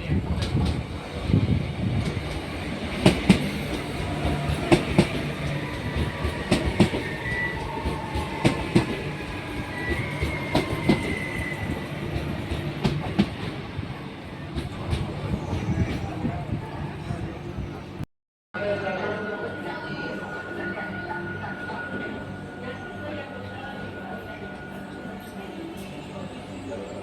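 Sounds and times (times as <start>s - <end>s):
train running rumble: 0.0s - 18.0s
train wheels clacking: 2.0s - 16.1s
high wheel squeal: 5.3s - 12.4s.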